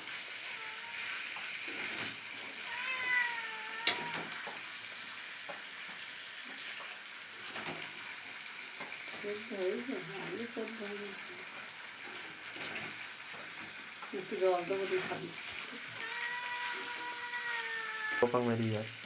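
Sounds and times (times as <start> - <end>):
chicken sizzling in a pan: 0.0 - 19.0
cat meowing: 0.4 - 1.3, 2.5 - 4.6, 15.7 - 18.3.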